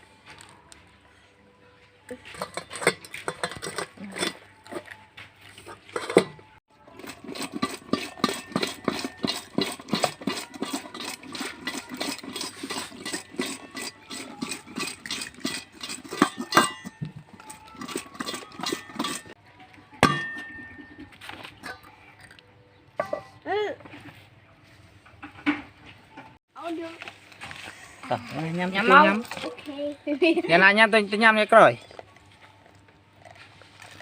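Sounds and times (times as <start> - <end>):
metal utensils clinking on cookware: 2.2 - 5.0, 5.6 - 19.4, 20.0 - 21.9, 23.0 - 23.4.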